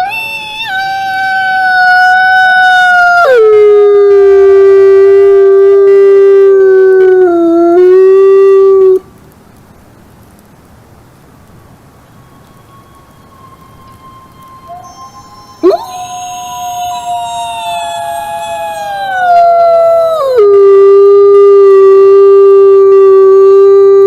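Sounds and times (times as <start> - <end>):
wolf howling: 0.0 - 5.8, 12.4 - 24.0
faint hiss: 0.0 - 24.0.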